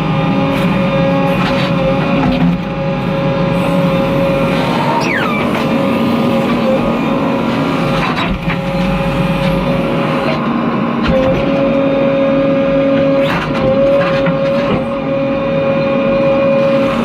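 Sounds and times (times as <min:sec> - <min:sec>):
diesel engine running: 0:00.0 - 0:17.0
high whine: 0:02.8 - 0:11.0.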